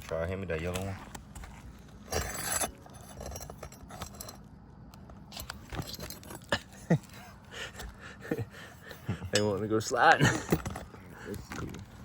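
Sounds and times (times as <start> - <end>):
metal tool scraping shingles: 2.0 - 4.5.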